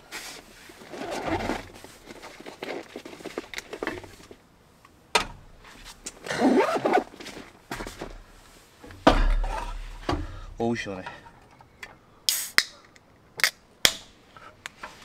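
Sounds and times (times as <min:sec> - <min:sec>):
beer can opening crack: 0:12.3 - 0:14.1.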